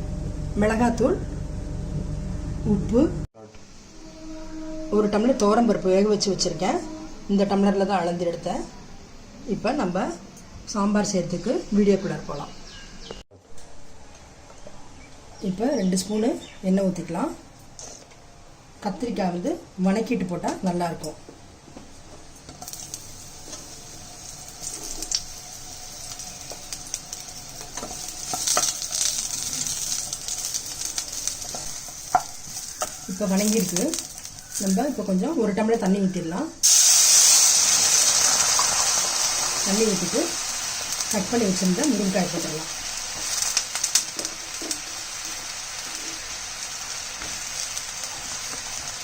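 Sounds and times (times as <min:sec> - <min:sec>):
vegetables sizzling in oil: 0:22.3 - 0:49.0.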